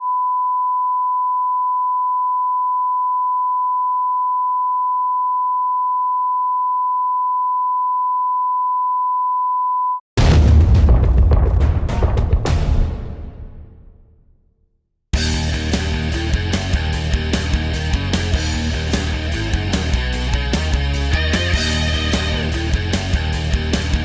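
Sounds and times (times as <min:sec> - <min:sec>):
loud music with heavy bass: 0:15.2 - 0:24.0.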